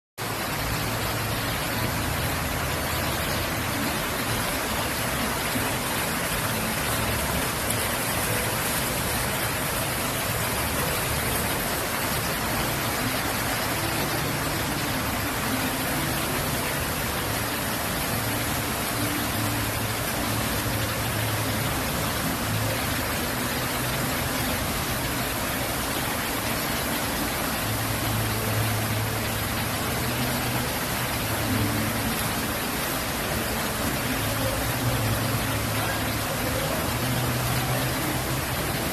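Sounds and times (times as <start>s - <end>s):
waterfall splashing: 0.2s - 38.9s.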